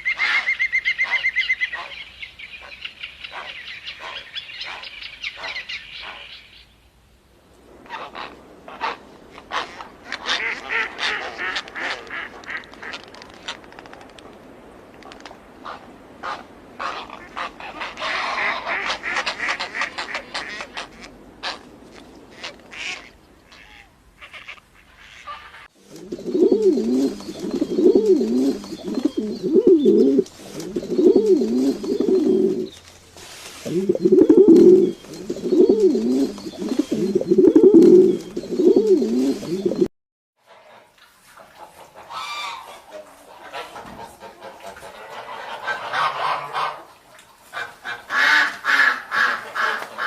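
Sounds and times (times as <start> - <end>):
pigeons cooing: 25.9 - 32.8, 33.6 - 39.9.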